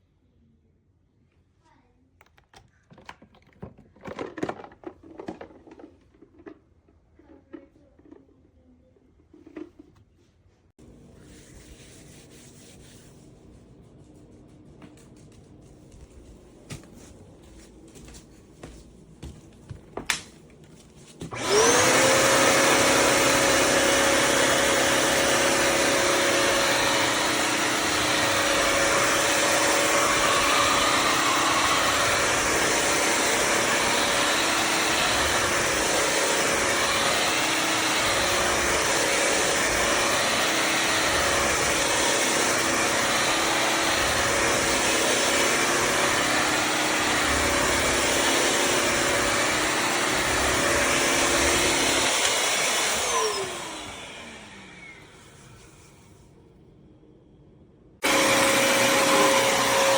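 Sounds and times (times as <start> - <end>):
vacuum motor whine: 20.0 - 56.1, 58.0 - 59.9.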